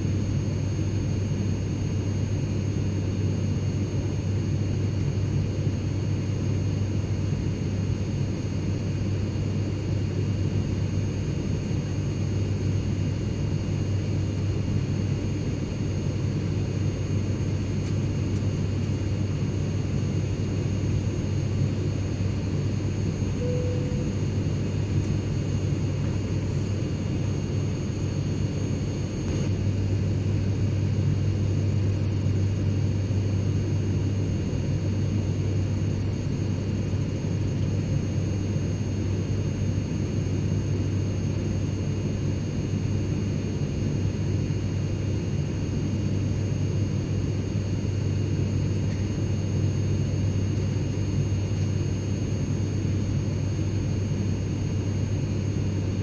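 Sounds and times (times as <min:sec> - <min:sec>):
jet engine drone in cabin: 0:00.0 - 0:56.0
faint high whining tones: 0:23.0 - 0:28.4.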